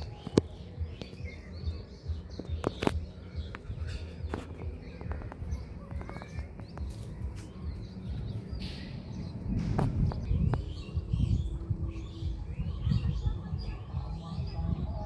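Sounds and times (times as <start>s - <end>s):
small birds chirping: 0.0s - 15.0s
low rumble: 7.2s - 15.0s.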